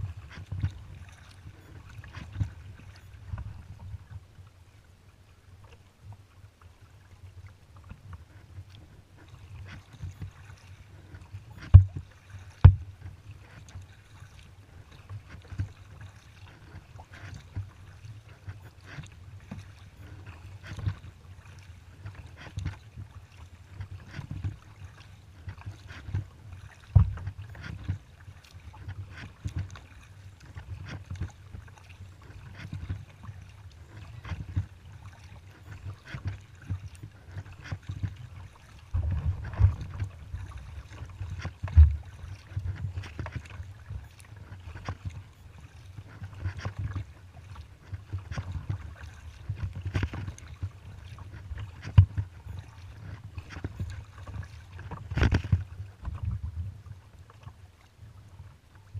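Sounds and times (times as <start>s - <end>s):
wind rumble on microphone: 0.0s - 4.5s, 7.0s - 14.2s, 14.8s - 58.9s
paddle splashing in water: 0.0s - 58.9s.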